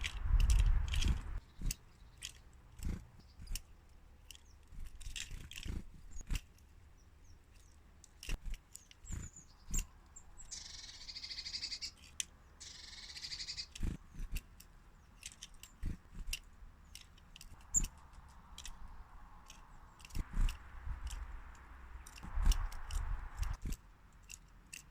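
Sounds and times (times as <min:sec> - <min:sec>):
birds chirping: 0:00.0 - 0:24.3
birds pecking and tapping: 0:00.0 - 0:24.9.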